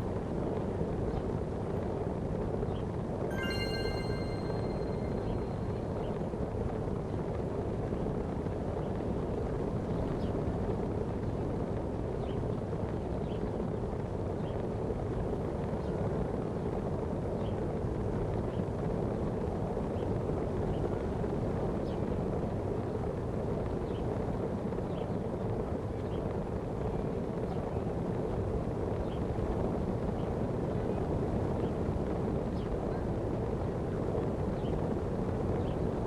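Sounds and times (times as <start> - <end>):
faint short chirps: 3.3 - 5.8.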